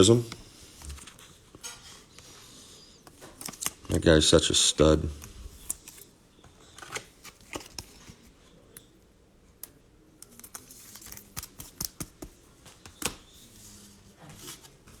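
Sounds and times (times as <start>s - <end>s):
cards clicking and sliding: 3.1s - 3.9s, 6.7s - 8.8s, 9.6s - 13.5s.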